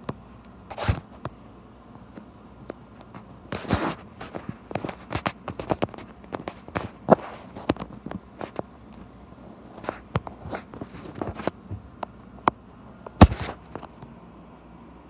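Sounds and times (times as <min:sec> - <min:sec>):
sharp loud knock: 0:13.2 - 0:13.5.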